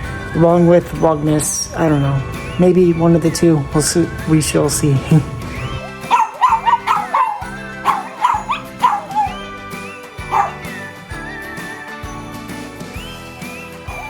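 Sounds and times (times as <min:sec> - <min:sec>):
background music: 0:00.0 - 0:14.0
dogs yapping: 0:05.8 - 0:10.9.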